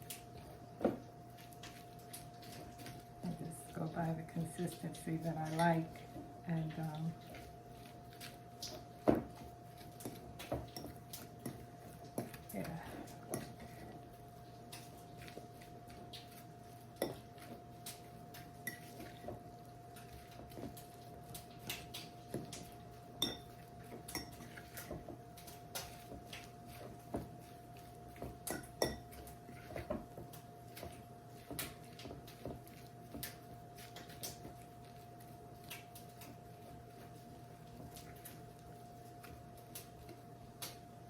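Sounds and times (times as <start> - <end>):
utensil clinking against bowl: 23.2 - 25.0, 28.2 - 29.9.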